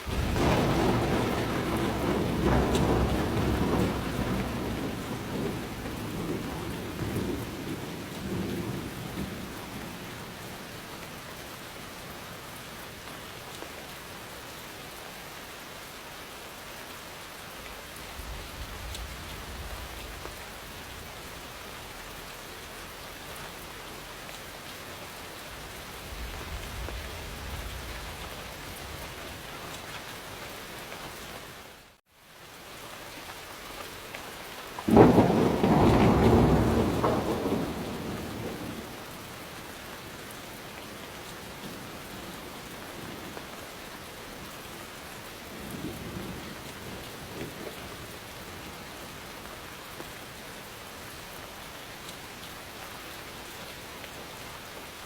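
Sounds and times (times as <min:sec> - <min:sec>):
thunder rumbling: 0:00.0 - 0:10.8, 0:18.0 - 0:22.3, 0:25.4 - 0:29.7, 0:34.9 - 0:43.6, 0:45.5 - 0:48.9
steady rain: 0:00.0 - 0:55.0.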